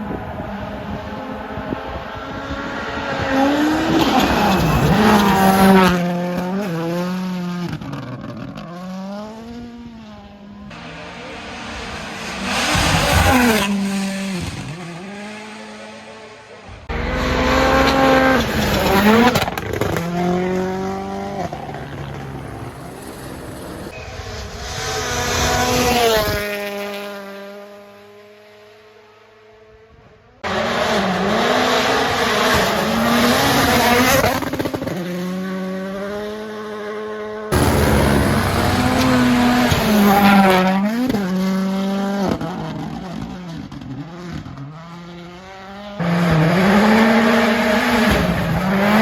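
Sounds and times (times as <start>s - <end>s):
rally car engines revving: 0.0s - 49.0s
car passing by: 10.7s - 27.6s.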